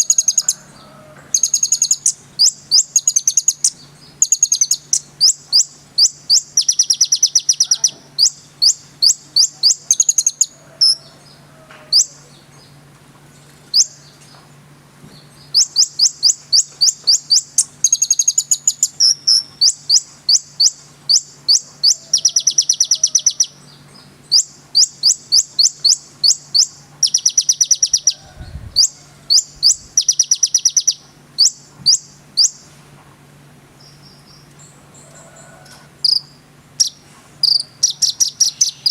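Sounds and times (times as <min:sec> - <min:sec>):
bird chirping: 0:00.0 - 0:14.5, 0:15.1 - 0:32.7, 0:33.8 - 0:38.9
faint low hum: 0:00.0 - 0:38.9.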